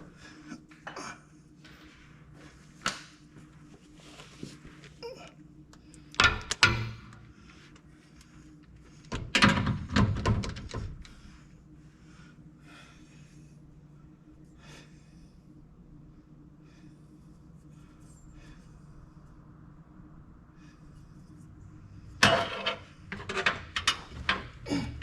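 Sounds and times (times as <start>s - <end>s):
faint steady hum: 0.0s - 25.0s
metal parts rattling clatter: 22.2s - 24.5s.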